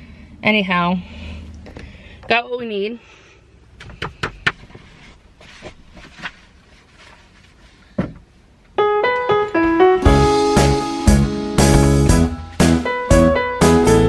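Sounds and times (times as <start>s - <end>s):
background piano music: 8.8s - 14.0s.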